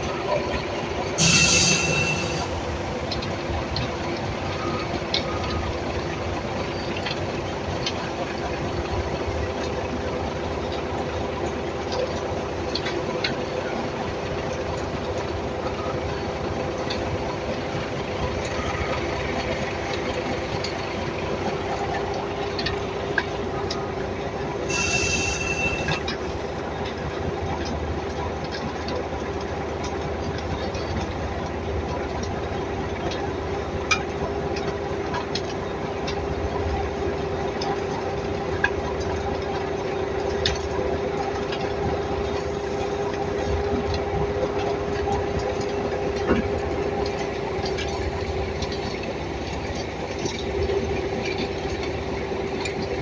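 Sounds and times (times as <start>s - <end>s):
heavy machinery drone: 0.0s - 7.1s, 15.1s - 26.9s
high-pitched tone: 1.2s - 2.8s
metallic squealing: 1.2s - 2.8s, 24.7s - 26.2s.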